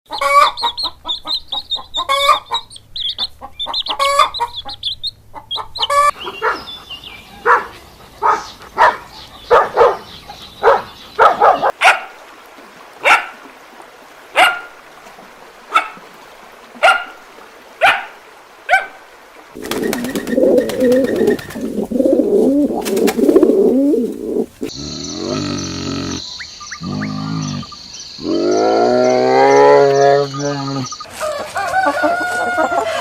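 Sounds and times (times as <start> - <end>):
farm animal calls: 0.1 - 11.7, 19.8 - 31.1.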